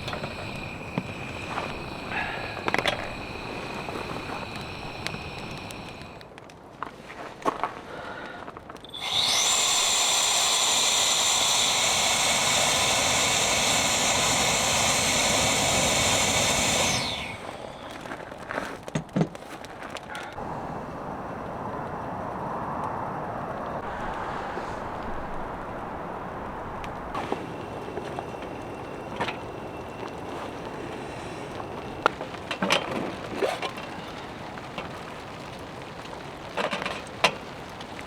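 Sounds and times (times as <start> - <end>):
small electric motor whining: 0.0 - 6.2, 8.9 - 18.2.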